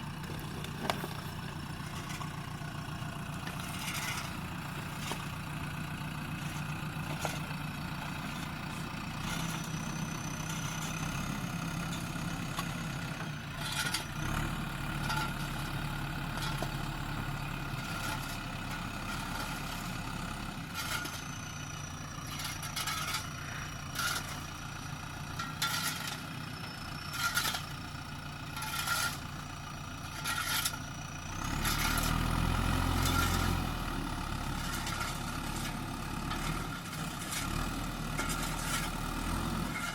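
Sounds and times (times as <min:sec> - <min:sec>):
diesel engine running: 0:00.0 - 0:39.9
metallic clanks and knocks: 0:06.4 - 0:09.8, 0:25.4 - 0:26.3.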